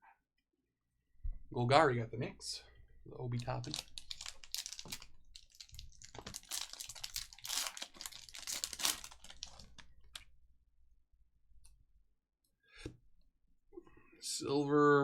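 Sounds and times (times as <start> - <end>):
wrapper tearing and crinkling: 3.4 - 10.2.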